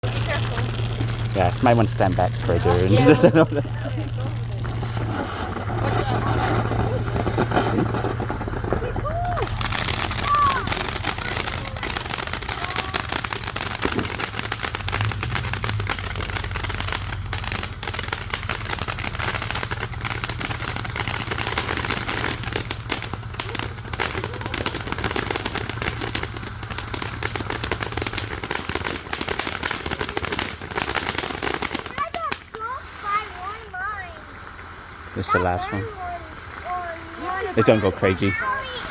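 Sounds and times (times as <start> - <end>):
low rumble: 0.0 - 24.9
firework fountain crackling: 0.0 - 38.9.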